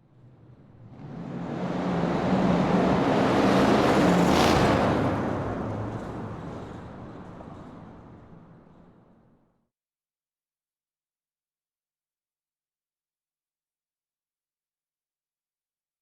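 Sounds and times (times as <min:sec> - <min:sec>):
muscle car driving past: 0:00.4 - 0:09.0.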